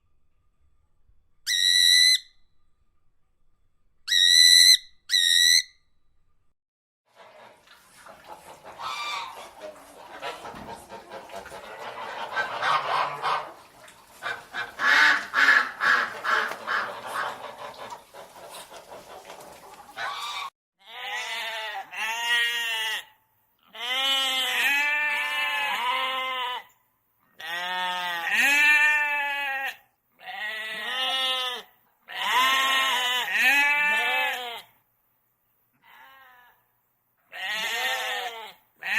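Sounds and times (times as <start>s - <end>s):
geese honking: 8.3s - 20.5s
goat bleating: 20.8s - 23.1s, 23.7s - 26.7s, 27.4s - 34.7s, 35.8s - 36.6s, 37.3s - 38.9s.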